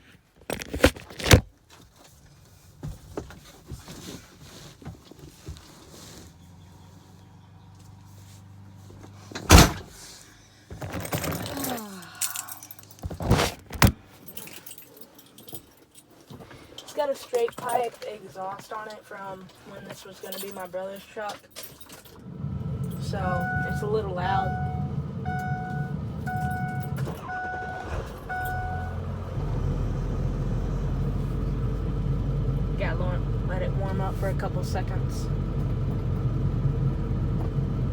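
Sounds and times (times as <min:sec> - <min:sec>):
rustling and scraping: 0:00.0 - 0:07.2, 0:12.6 - 0:22.2
vehicle door thumping shut: 0:09.4 - 0:10.0
pickup truck exhaust idling: 0:22.2 - 0:37.9
warning chime beeping: 0:22.8 - 0:29.0.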